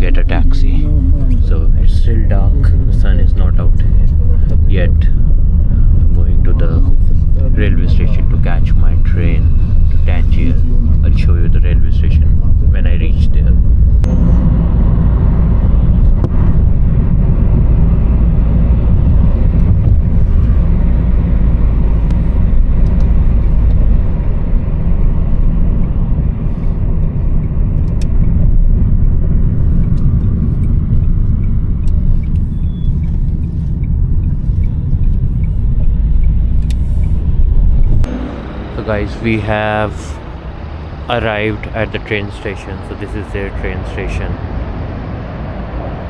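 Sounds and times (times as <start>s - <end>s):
car engine and road rumble: 0.0s - 46.0s.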